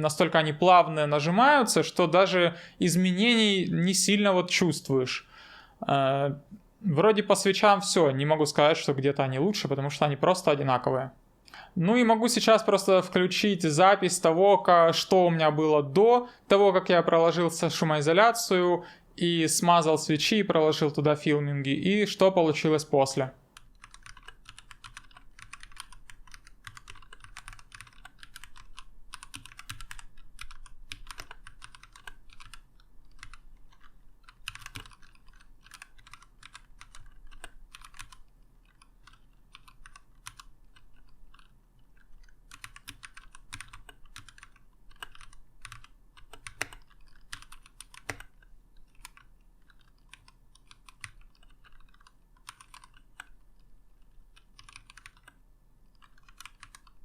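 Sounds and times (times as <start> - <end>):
mechanical keyboard typing: 23.5 - 57.0.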